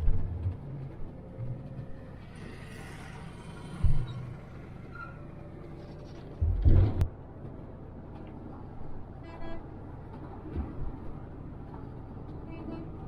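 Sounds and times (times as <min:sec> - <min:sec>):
bus engine and road rumble: 0:00.0 - 0:13.0
loud low thump: 0:06.4 - 0:07.1.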